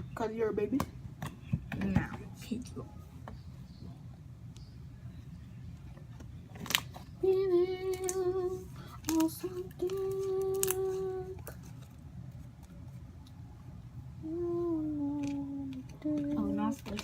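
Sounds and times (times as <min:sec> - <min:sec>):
girl singing held notes: 0:07.2 - 0:11.6, 0:14.2 - 0:17.0.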